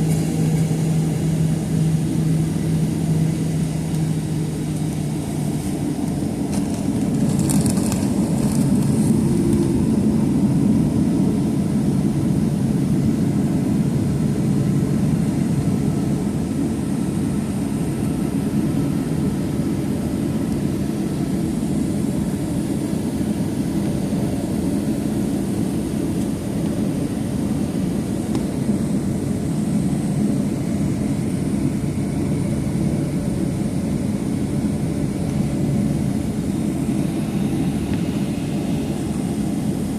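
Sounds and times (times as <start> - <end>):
jet engine cabin rumble: 0.0 - 39.9.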